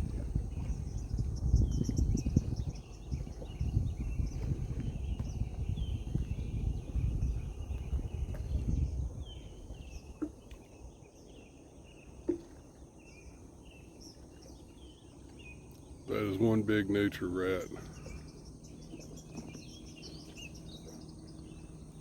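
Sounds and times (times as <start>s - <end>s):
low rumbling noise: 0.0s - 10.0s
birds chirping: 0.0s - 22.0s.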